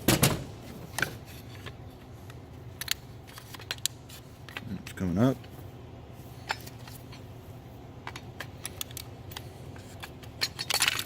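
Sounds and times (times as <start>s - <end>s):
small parts clicking and tapping: 1.6s - 5.0s, 8.0s - 11.0s.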